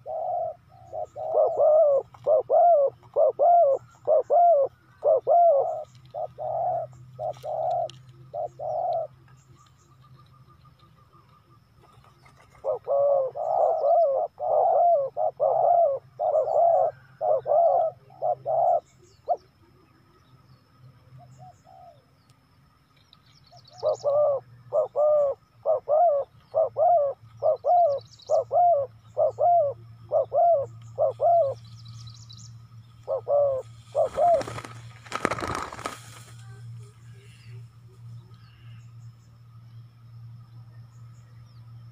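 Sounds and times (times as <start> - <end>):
dove cooing: 0.0 - 9.2, 11.8 - 19.9, 21.2 - 22.0, 23.7 - 31.6, 33.0 - 35.9
rustling: 33.6 - 37.0.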